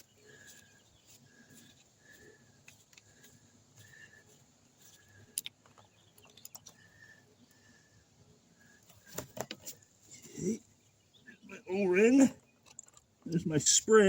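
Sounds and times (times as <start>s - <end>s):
small metal parts clicking: 12.6s - 13.1s.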